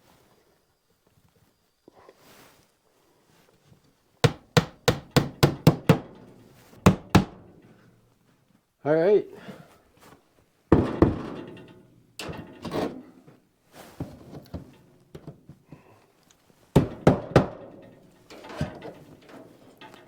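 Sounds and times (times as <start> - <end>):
knocks and thuds on wood: 4.2 - 7.6, 10.7 - 11.5, 16.7 - 18.0.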